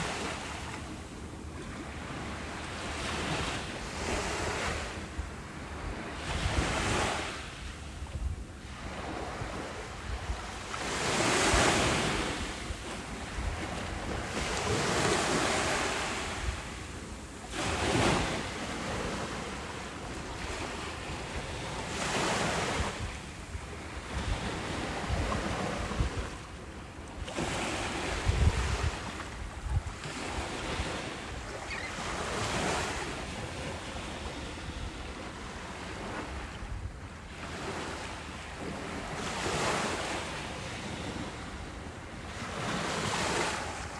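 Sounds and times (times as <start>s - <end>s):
ocean waves breaking: 0.0s - 36.6s, 37.3s - 43.9s
wind buffeting microphone: 3.3s - 19.6s, 20.3s - 26.5s, 27.2s - 32.7s.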